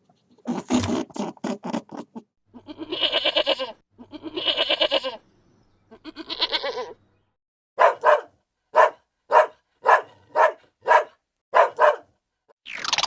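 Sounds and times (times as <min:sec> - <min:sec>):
pulsing bleat-like call: 0:02.6 - 0:05.2, 0:05.9 - 0:07.0
dog barking: 0:07.8 - 0:12.1.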